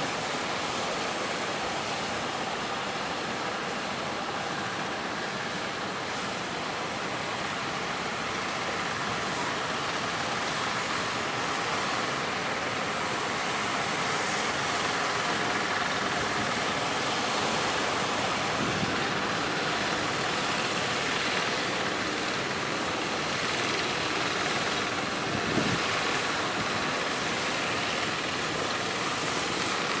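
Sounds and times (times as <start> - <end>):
strong wind: 12.9 - 30.0.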